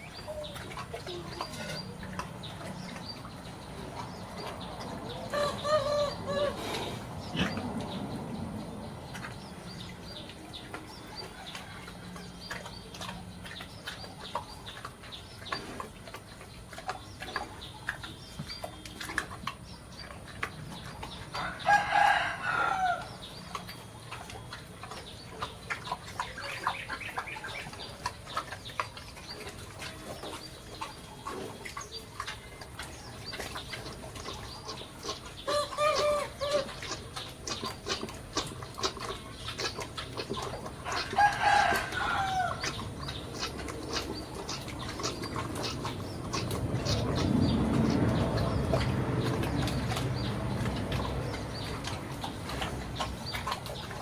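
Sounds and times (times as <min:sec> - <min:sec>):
chickens clucking: 0:00.0 - 0:54.0
rooster crowing: 0:21.4 - 0:23.1, 0:40.9 - 0:42.6.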